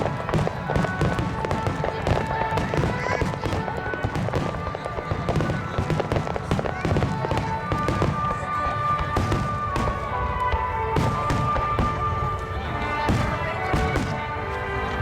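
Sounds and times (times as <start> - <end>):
fireworks booming and crackling: 0.0 - 15.0
music playing: 0.0 - 15.0.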